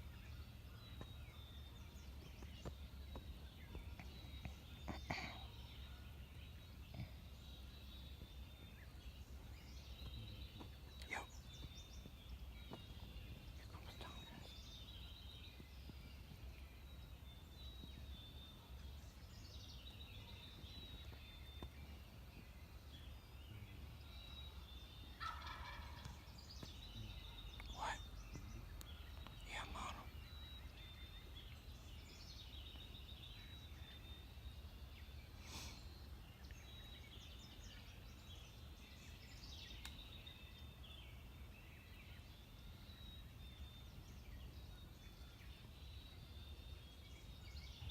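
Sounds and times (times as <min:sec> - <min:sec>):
wild turkey gobbling: 0:25.2 - 0:26.3.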